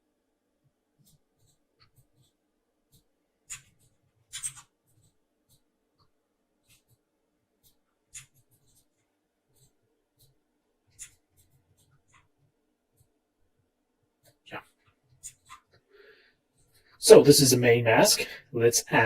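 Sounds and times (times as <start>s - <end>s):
computer clicks and taps: 1.0s - 7.0s.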